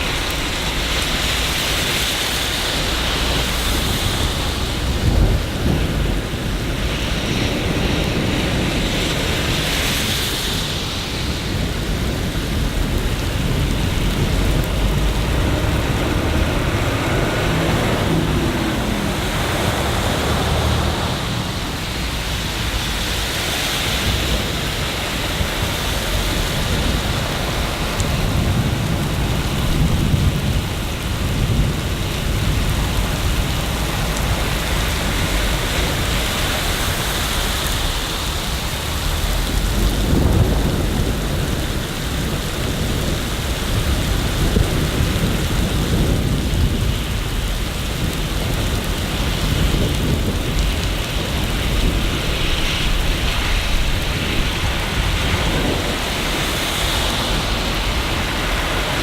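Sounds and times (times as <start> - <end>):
heavy rain: 0.0 - 59.0
deep low rumbles: 12.5 - 22.9.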